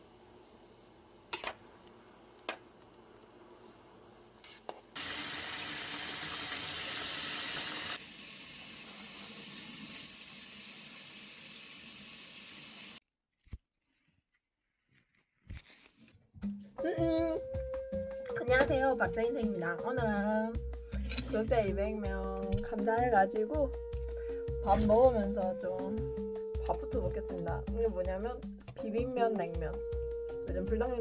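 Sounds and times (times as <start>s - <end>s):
tap water running into sink: 5.0s - 13.0s.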